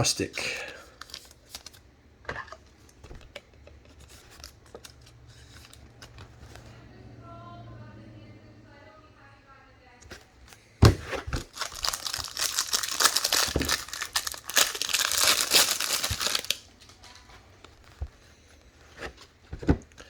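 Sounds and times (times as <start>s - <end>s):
plastic wrapper crinkling: 0.1s - 1.8s, 3.9s - 6.0s, 11.3s - 18.0s.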